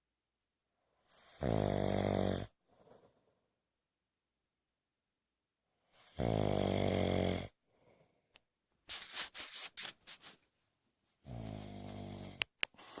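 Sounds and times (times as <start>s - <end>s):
person snoring: 1.1s - 2.5s, 6.0s - 7.6s, 11.3s - 13.0s.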